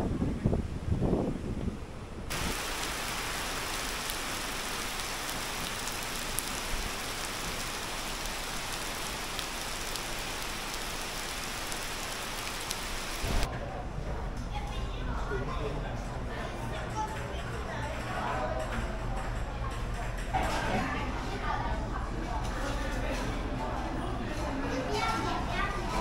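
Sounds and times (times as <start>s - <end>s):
steady hiss: 2.3s - 13.5s.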